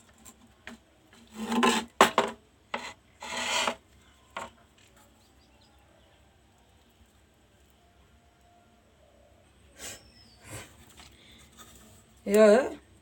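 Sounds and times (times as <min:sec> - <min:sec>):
hands scraping and rubbing parts: 0:00.0 - 0:05.0.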